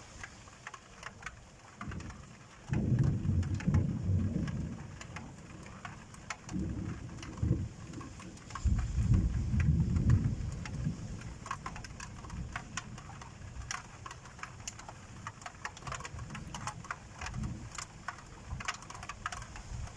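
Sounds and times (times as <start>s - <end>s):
rain drops on hard surface: 0.0s - 19.9s
thunder rumbling: 1.8s - 13.8s.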